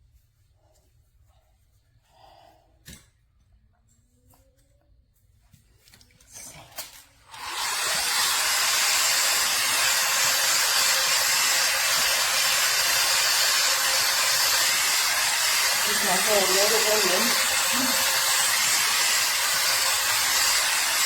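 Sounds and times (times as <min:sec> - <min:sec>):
hot air brush rush of air: 0:07.3 - 0:21.0.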